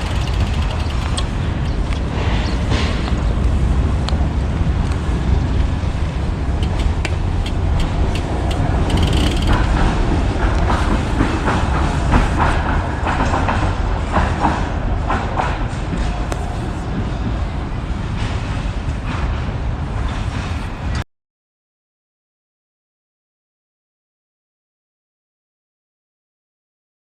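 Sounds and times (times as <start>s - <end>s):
bike tyres on path: 0.0s - 14.6s
bike ticks and rattles: 0.0s - 17.3s.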